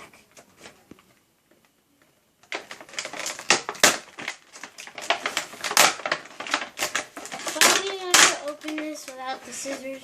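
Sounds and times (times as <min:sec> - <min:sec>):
plastic packaging crackling: 0:02.4 - 0:10.0.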